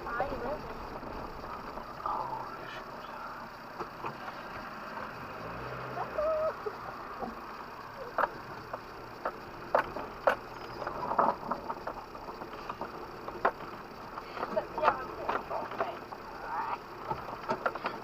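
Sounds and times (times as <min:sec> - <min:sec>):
vehicle engine running low: 0:00.0 - 0:18.0
sharp knocks and rattles: 0:07.1 - 0:18.0.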